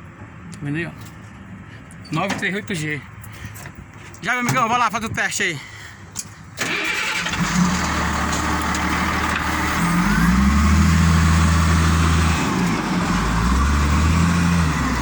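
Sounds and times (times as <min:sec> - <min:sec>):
diesel engine revving: 0:06.6 - 0:15.0.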